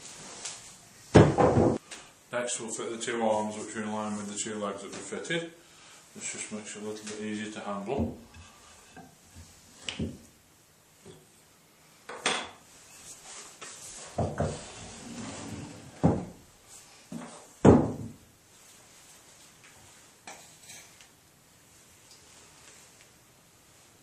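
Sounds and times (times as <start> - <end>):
wood scraping: 14.0 - 16.4.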